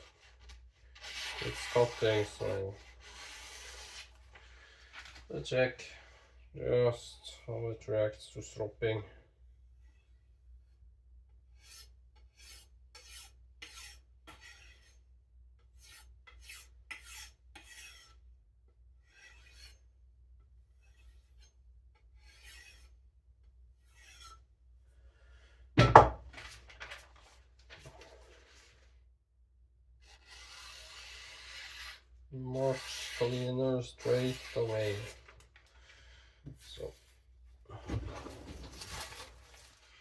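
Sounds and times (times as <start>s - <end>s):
knife being stropped: 0.1s - 4.3s, 11.6s - 15.0s, 15.8s - 18.2s, 19.0s - 19.8s, 20.8s - 21.6s, 22.2s - 23.0s, 23.8s - 24.5s, 30.0s - 35.6s.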